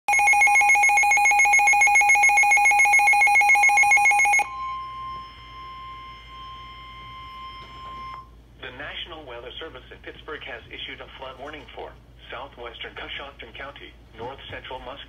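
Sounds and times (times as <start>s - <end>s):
steady alarm tone: 0.1s - 8.5s.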